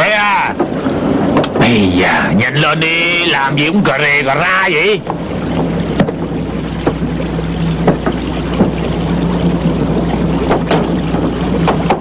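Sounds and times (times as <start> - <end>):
water noise: 0.0 - 12.0
wind: 0.0 - 12.0
low motor drone: 5.0 - 12.0
sharp knocks: 5.1 - 7.1, 7.8 - 8.8, 10.4 - 12.0.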